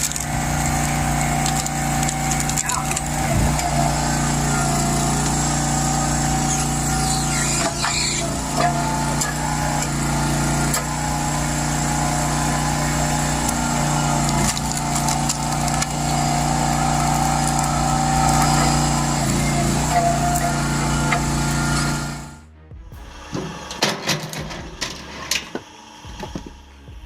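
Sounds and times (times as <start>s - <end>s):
small petrol engine running: 0.0s - 27.0s.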